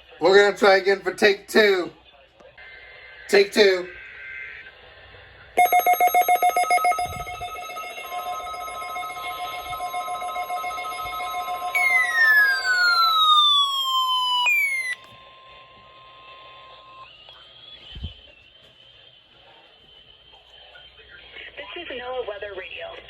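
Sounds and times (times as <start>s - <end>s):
faint steady tone: 5.6s - 15.0s
loud falling tone sweep: 5.6s - 15.0s
steady electronic alert tones: 5.6s - 15.0s.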